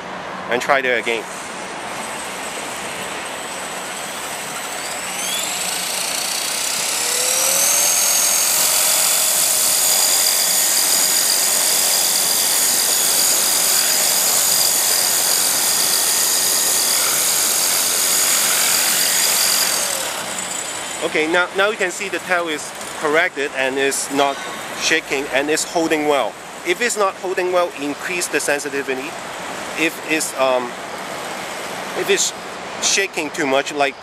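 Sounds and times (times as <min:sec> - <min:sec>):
rc helicopter motor whine: 0:01.9 - 0:21.1.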